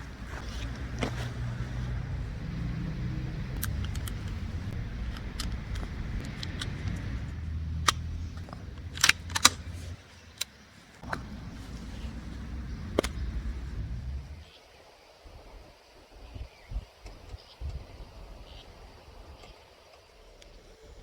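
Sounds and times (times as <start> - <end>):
handling clicks and knocks: 0.0 - 14.0
vehicle engine idling: 0.0 - 14.6.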